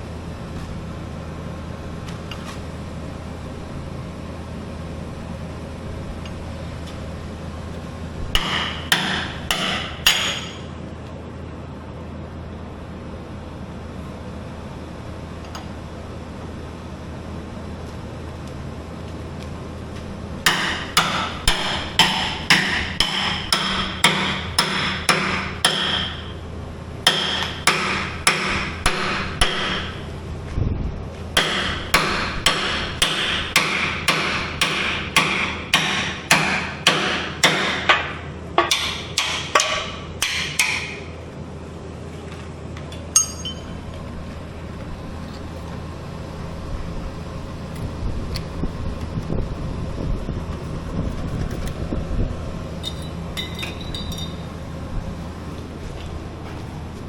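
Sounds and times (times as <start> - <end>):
hammer striking metal: 8.4 - 10.7, 20.5 - 26.4, 27.0 - 30.0, 31.4 - 41.1, 43.2 - 43.8
ringing clang: 43.2 - 43.8.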